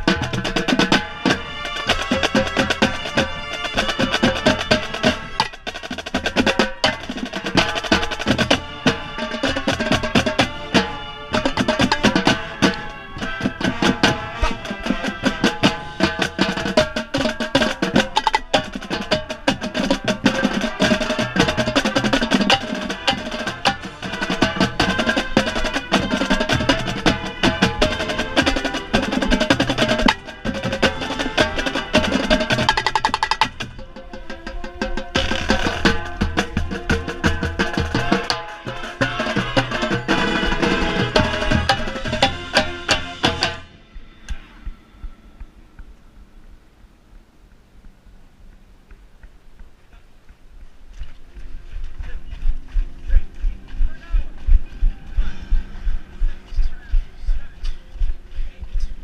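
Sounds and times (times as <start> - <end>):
tenor drums rapid strokes: 0.0 - 45.6
marching band playing: 0.0 - 46.2.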